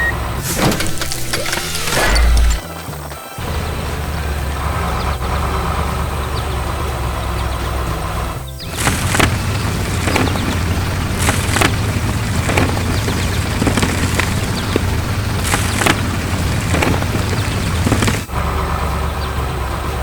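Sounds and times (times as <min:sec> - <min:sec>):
heavy vehicle engine running: 0:00.0 - 0:20.0
clatter: 0:00.4 - 0:03.6, 0:08.6 - 0:18.4.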